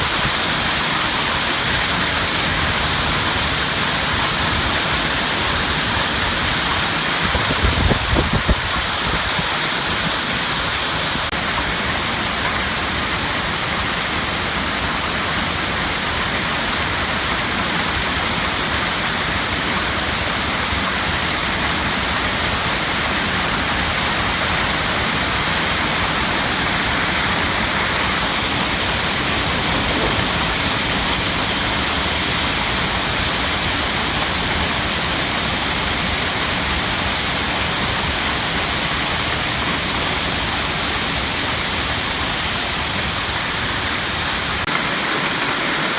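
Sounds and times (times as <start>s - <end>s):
wind buffeting microphone: 0.0s - 11.3s, 25.6s - 35.2s
hail and rain pelting: 0.0s - 45.9s.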